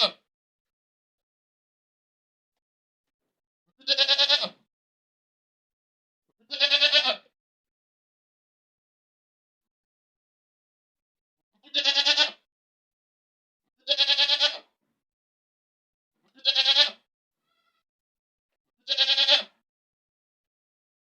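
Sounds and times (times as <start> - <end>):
goat bleating: 0.0 - 0.2, 3.8 - 4.7, 6.4 - 7.4, 11.6 - 12.5, 13.8 - 14.7, 16.2 - 17.9, 18.8 - 19.6.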